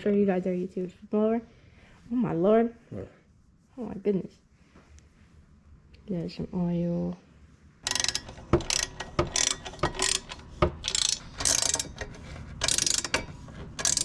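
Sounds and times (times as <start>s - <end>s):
ratchet wrench clicking: 7.8s - 14.0s.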